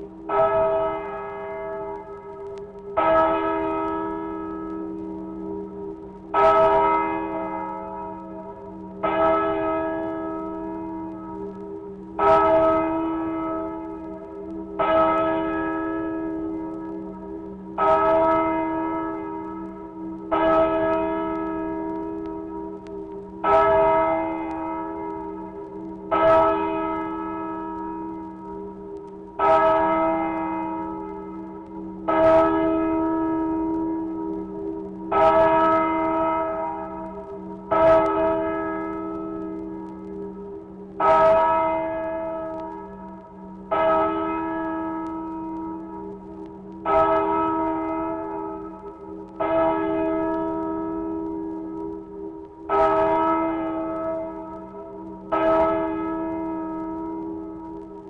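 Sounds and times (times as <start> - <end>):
church bell tolling: 0.0 - 58.0.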